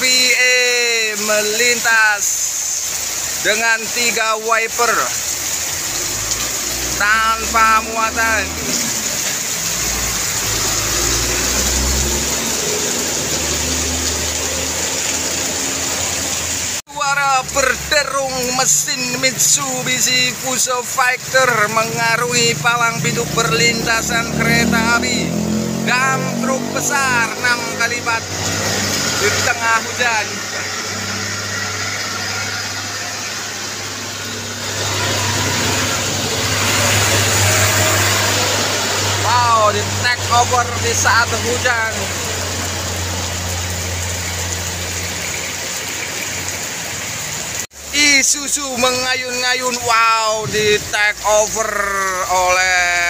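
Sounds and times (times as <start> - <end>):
heavy rain pouring: 0.0 - 53.0
tyres hissing on wet road: 0.0 - 53.0
truck diesel engine: 4.8 - 16.8, 21.4 - 47.6.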